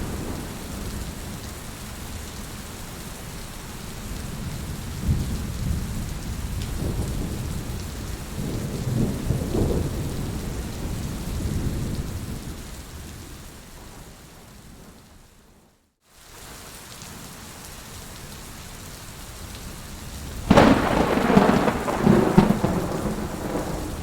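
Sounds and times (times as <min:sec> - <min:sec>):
steady rain: 0:00.0 - 0:24.0
thunder rumbling: 0:20.4 - 0:24.0.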